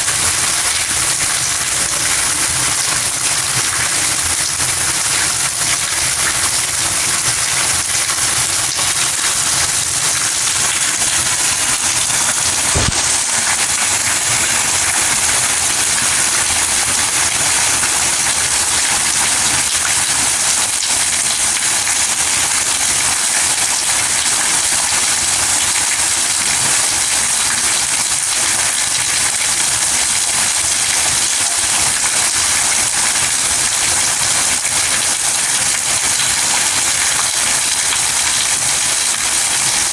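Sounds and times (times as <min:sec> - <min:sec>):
steady rain falling: 0:00.0 - 0:39.9
short click: 0:12.7 - 0:13.1.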